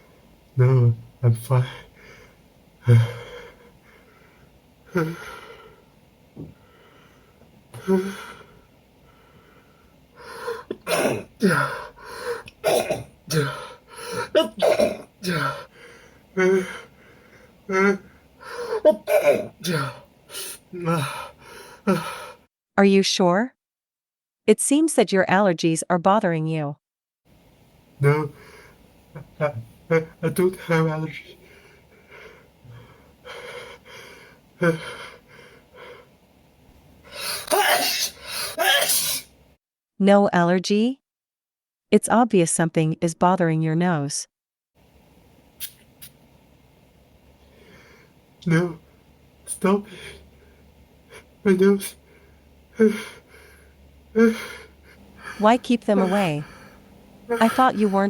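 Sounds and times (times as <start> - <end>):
man sneezing: 10.7 - 11.8, 12.6 - 15.7, 17.7 - 21.3, 37.1 - 39.3, 49.5 - 50.2, 51.5 - 52.0, 52.8 - 53.2, 54.2 - 54.6, 56.0 - 56.6
man sniffing and hitching breaths: 13.2 - 14.6, 15.2 - 22.5, 31.3 - 36.2, 47.4 - 58.0.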